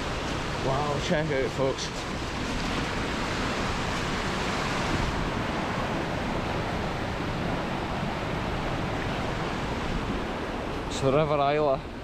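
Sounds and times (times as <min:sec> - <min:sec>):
rushing floodwater: 0:00.0 - 0:12.0.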